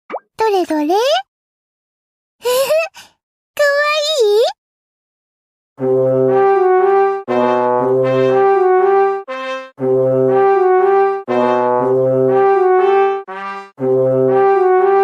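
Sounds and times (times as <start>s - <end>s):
brass tune of held notes: 5.8s - 15.0s.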